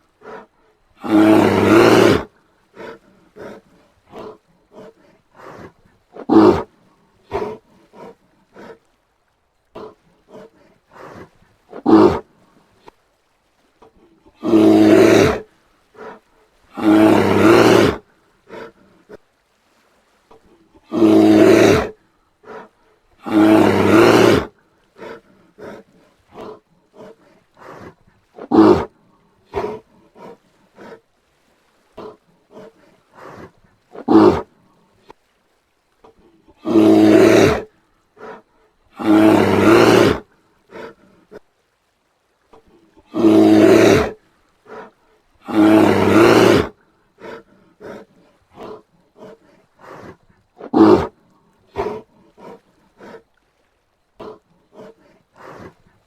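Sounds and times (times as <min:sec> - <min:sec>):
bear grunting faintly: 0:00.0 - 0:09.0, 0:09.7 - 0:13.0, 0:13.7 - 0:19.3, 0:20.2 - 0:35.2, 0:36.0 - 0:41.5, 0:42.5 - 0:56.0
bear roaring: 0:00.2 - 0:08.8, 0:09.8 - 0:12.2, 0:14.4 - 0:19.2, 0:20.8 - 0:28.9, 0:29.5 - 0:31.0, 0:32.0 - 0:34.5, 0:36.6 - 0:41.0, 0:43.0 - 0:53.2, 0:54.2 - 0:55.9.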